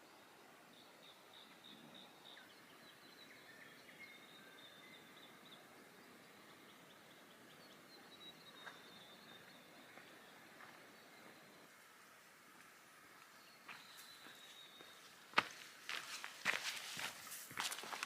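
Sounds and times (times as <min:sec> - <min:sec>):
faint high-pitched bird chirps: 0:00.8 - 0:09.7.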